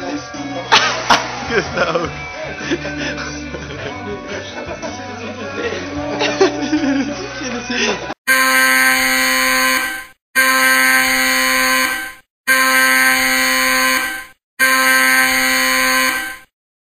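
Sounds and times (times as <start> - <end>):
loud buzzer alarm tone: 8.3 - 16.6.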